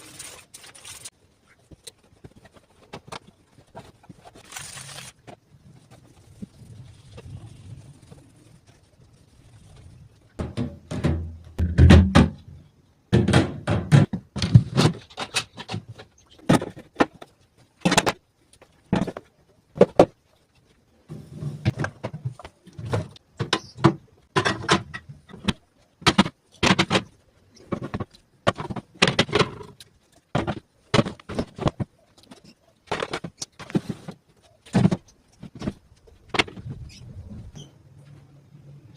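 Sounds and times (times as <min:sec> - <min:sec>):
objects knocking and clattering: 0:10.4 - 0:20.2, 0:21.1 - 0:36.8.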